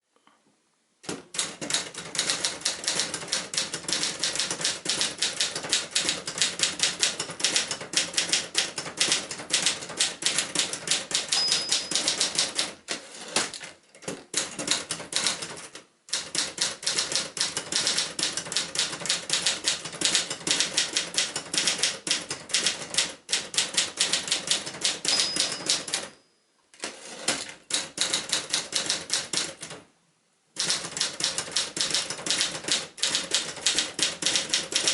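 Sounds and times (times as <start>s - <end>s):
typewriter typing: 1.0s - 26.2s, 26.8s - 29.9s, 30.6s - 34.9s
typewriter bell ring: 11.1s - 12.6s, 24.6s - 26.4s.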